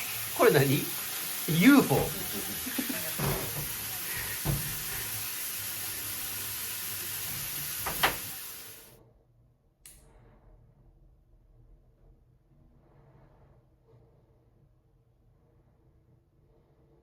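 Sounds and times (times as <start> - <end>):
steady hiss: 0.0 - 9.0.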